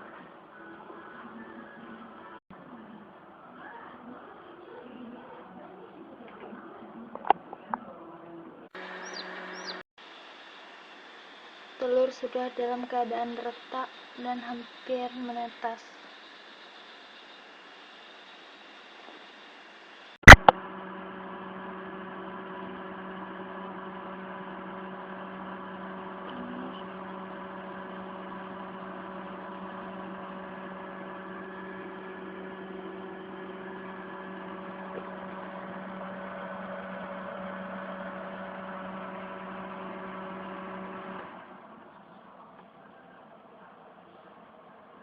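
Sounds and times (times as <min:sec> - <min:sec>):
small fan motor humming: 0:08.8 - 0:42.9
sharp click: 0:20.3 - 0:20.5.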